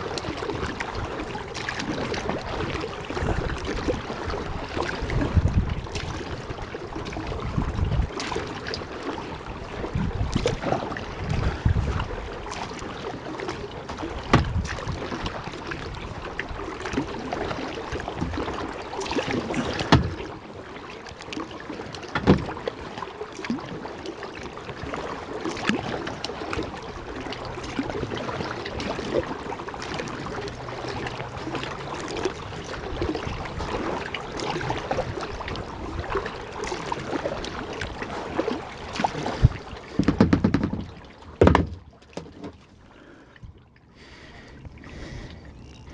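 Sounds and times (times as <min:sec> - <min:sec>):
wind buffeting microphone: 0:00.0 - 0:08.8, 0:09.4 - 0:12.5, 0:14.0 - 0:16.7, 0:39.0 - 0:41.8
paddle strokes splashing: 0:00.0 - 0:45.9
sharp knocks: 0:14.3 - 0:14.6, 0:19.9 - 0:20.2, 0:22.2 - 0:22.5, 0:40.0 - 0:41.9.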